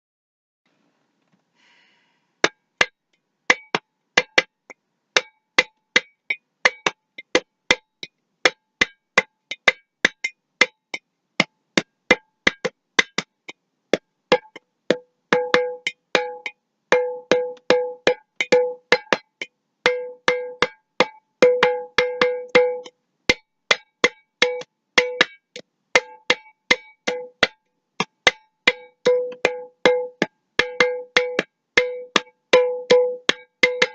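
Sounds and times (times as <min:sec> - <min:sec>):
glass jar tapping: 0:26.0 - 0:33.9.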